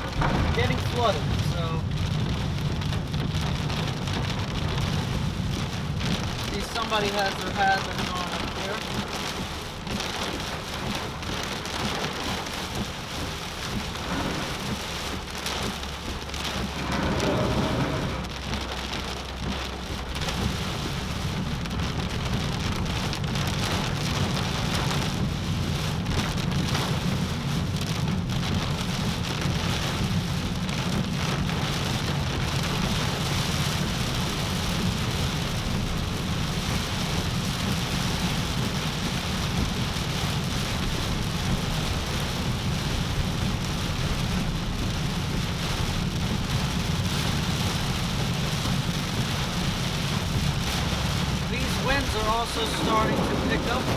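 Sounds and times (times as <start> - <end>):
low rumble: 0.0 - 10.0, 12.8 - 23.6, 48.6 - 53.9
heavy rain drumming on a car: 0.0 - 53.9.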